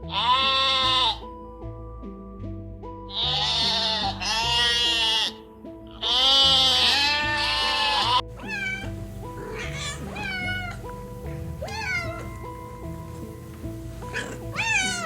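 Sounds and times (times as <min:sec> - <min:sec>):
loud quavering bleat: 0:00.0 - 0:01.3, 0:03.1 - 0:11.0, 0:14.0 - 0:15.0
background music: 0:00.0 - 0:15.0
cat meowing: 0:00.1 - 0:01.2, 0:03.1 - 0:05.4, 0:06.0 - 0:13.3, 0:14.0 - 0:15.0.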